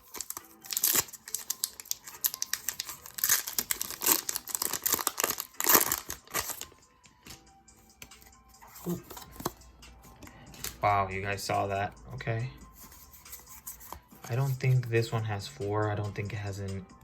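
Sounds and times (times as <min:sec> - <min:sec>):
foil wrapper crinkling and tearing: 0:00.0 - 0:06.7.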